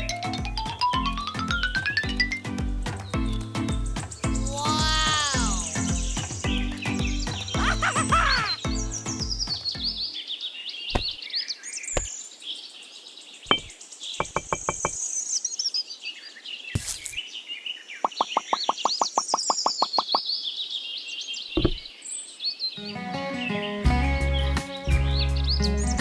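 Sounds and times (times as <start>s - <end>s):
birds chirping and trilling: 0.0s - 26.0s.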